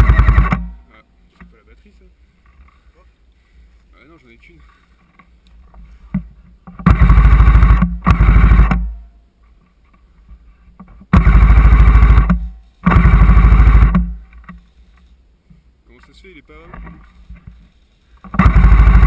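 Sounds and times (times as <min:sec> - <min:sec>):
airsoft gun full auto bursts: 0:00.0 - 0:00.7, 0:06.8 - 0:09.0, 0:11.1 - 0:14.2, 0:18.3 - 0:19.0.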